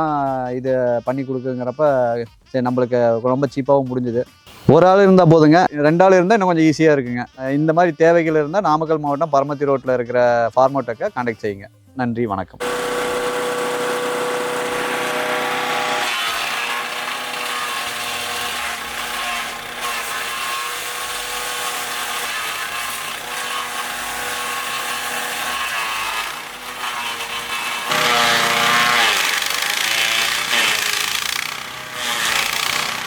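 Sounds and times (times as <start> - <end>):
wood chipper engine hum: 12.6 - 33.0
wood chipper grinding: 12.6 - 33.0.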